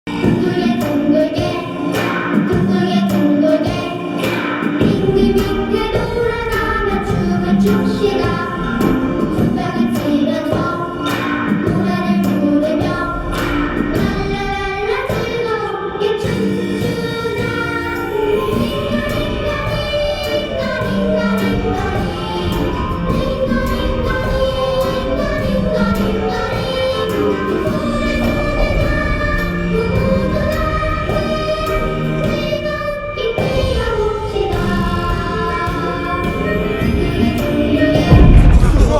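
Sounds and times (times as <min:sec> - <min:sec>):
choir-like song with instruments: 0:00.1 - 0:38.9.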